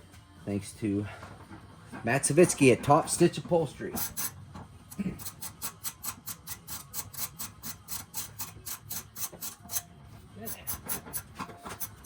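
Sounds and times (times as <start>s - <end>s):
ratchet tool clicking: 4.0s - 4.4s, 5.2s - 9.9s.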